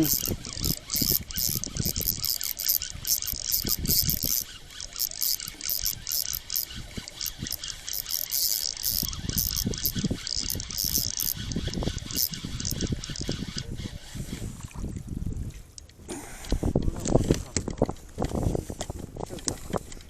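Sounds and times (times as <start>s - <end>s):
fishing reel ratcheting: 0.0s - 14.2s.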